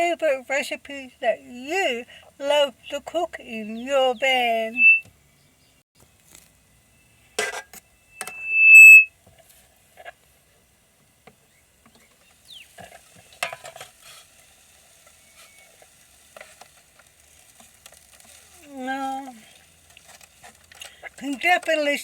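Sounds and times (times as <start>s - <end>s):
kebabs sizzling faintly: 0.0s - 22.0s
loud high-pitched tone: 4.7s - 5.0s, 8.2s - 9.1s.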